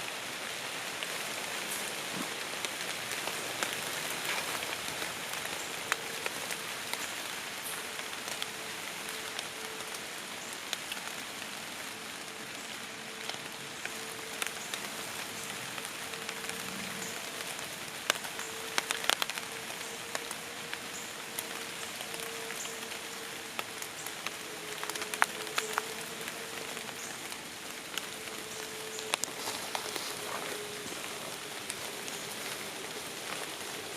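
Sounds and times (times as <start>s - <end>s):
light rain on leaves: 0.0s - 33.9s.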